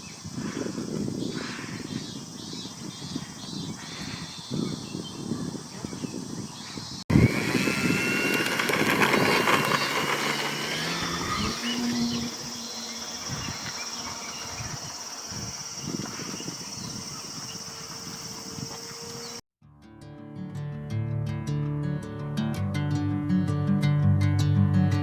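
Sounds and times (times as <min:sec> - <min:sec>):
model airplane motor whining: 0:07.1 - 0:19.4.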